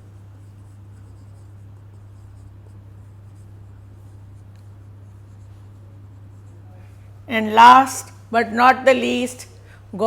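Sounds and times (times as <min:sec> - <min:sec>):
low electrical hum: 0:00.0 - 0:10.0
pen scratching while writing: 0:00.2 - 0:06.6.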